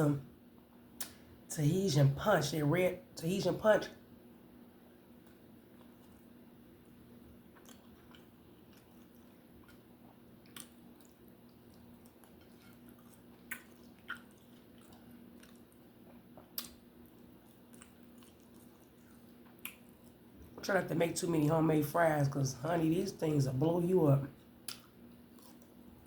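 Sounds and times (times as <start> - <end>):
faint steady hum: 0.0 - 26.0
person chewing food: 5.1 - 20.6, 24.4 - 26.0.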